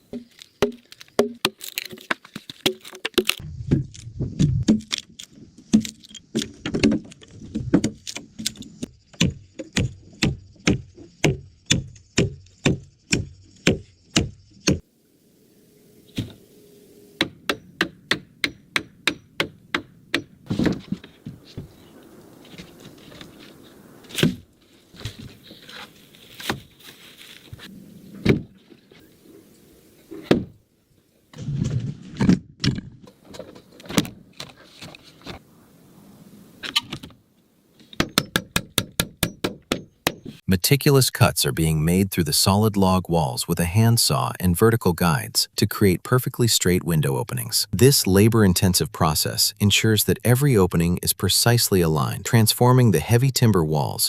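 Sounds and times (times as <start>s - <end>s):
hand tool striking wood: 0.1s - 3.4s, 38.0s - 40.4s
irregular knocks and scrapes: 20.4s - 29.5s.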